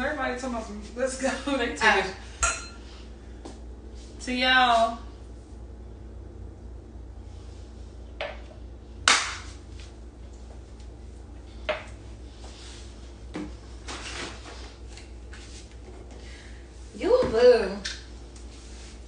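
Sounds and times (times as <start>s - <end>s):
soft scuffs and rustles: 12.2s - 16.1s, 18.2s - 19.0s.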